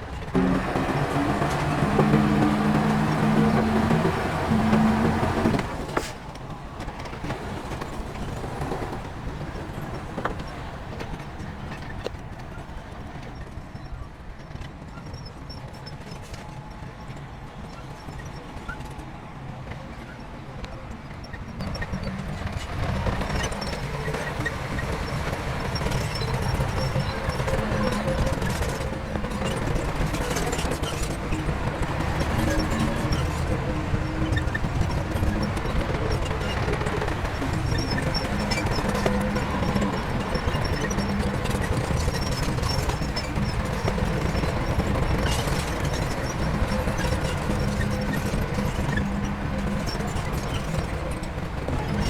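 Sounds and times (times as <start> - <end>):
low diesel rumble: 0.0 - 13.4, 22.1 - 52.0
rattling and clanking: 0.0 - 13.4, 22.4 - 52.0
metallic clanks and knocks: 0.4 - 13.3.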